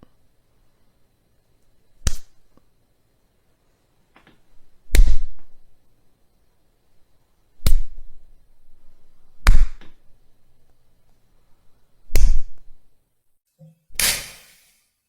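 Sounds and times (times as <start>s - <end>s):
sharp slaps: 2.0s - 2.4s, 4.9s - 5.4s, 7.6s - 8.0s, 9.4s - 10.0s, 12.1s - 12.6s, 14.0s - 14.8s.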